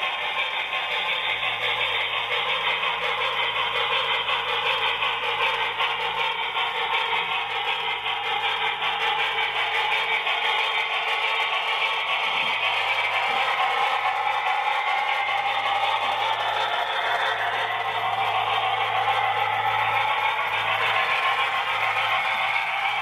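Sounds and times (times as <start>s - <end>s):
model train running on track: 0.0s - 23.0s.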